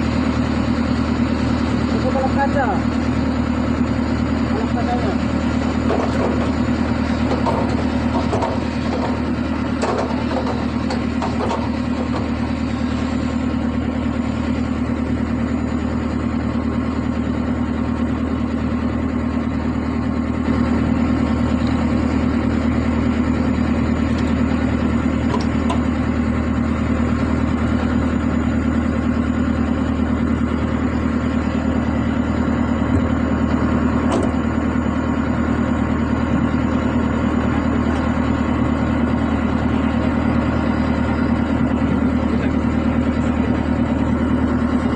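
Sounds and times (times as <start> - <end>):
excavator diesel engine running: 0.0 - 44.9.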